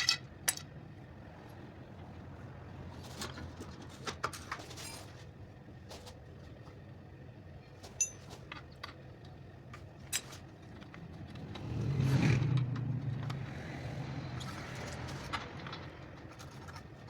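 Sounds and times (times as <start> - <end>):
car engine revving: 11.2 - 15.3.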